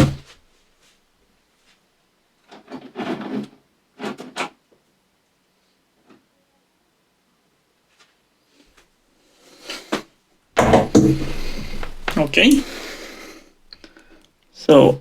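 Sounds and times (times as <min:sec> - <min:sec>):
objects rubbing and knocking: 0:02.5 - 0:04.5, 0:10.6 - 0:14.2
short sharp knocks: 0:10.6 - 0:13.0.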